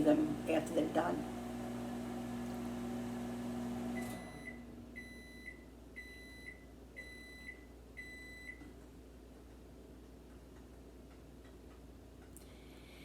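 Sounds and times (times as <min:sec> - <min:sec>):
microwave oven humming: 0:00.0 - 0:08.8
high microwave beeps: 0:03.7 - 0:08.6.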